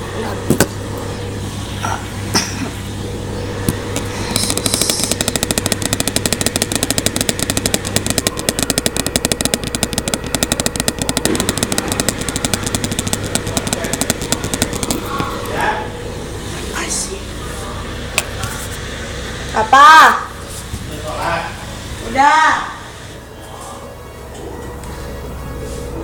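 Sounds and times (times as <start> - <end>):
washing machine hum: 0.0 - 26.0
washing machine drum rattling: 3.8 - 15.6.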